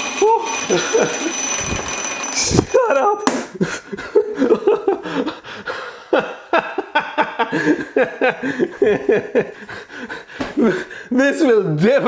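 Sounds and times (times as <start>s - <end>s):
man laughing: 0.2s - 1.3s, 2.8s - 9.8s, 10.5s - 10.9s.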